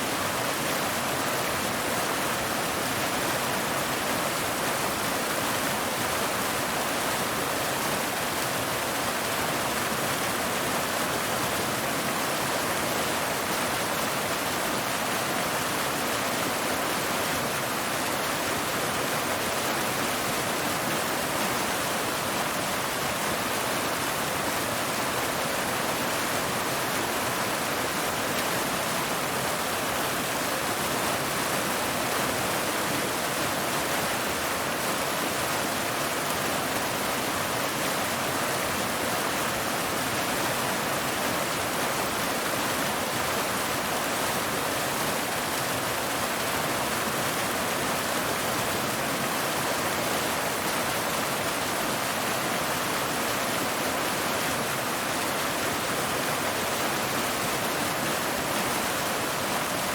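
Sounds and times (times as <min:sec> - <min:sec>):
waterfall over rocks: 0:00.0 - 0:59.9.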